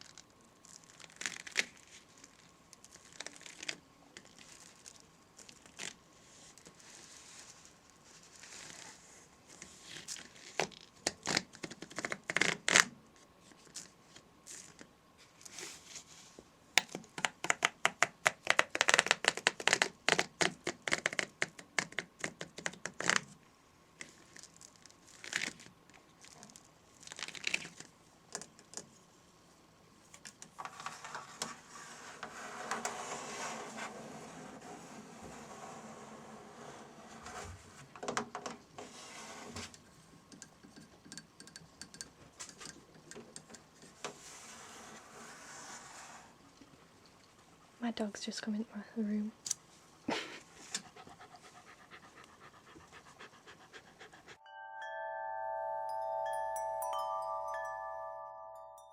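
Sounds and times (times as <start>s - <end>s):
crinkling and crackling: 0.0s - 12.9s, 16.8s - 23.4s, 24.0s - 28.9s.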